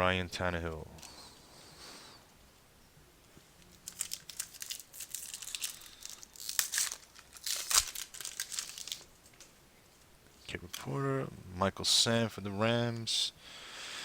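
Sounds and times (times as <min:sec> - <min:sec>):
wrapper tearing and crinkling: 0:03.6 - 0:09.4.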